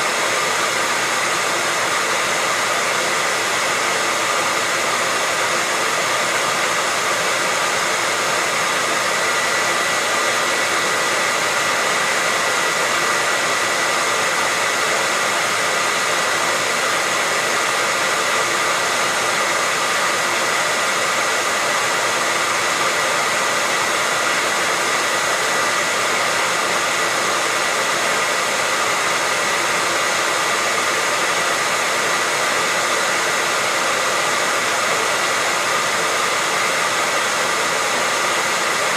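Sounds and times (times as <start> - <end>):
hair dryer running: 0.0 - 38.9.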